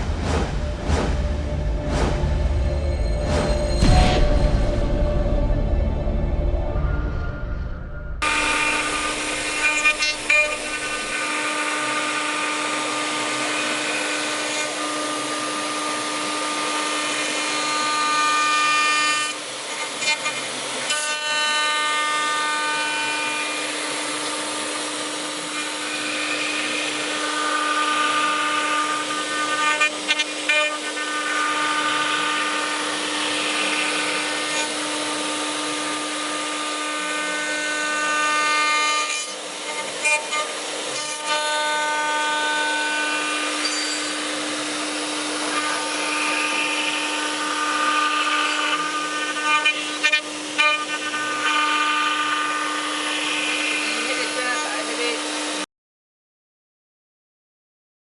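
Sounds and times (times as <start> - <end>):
machining centre hum: 0.0 - 55.7
spindle whines: 0.6 - 20.3, 39.6 - 55.6.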